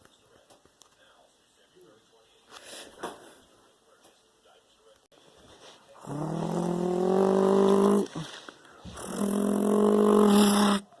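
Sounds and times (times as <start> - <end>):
person snoring: 6.0 - 11.0.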